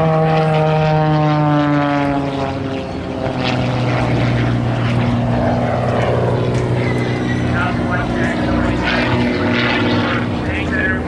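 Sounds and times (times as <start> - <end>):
propeller airplane flying past: 0.0 - 11.0.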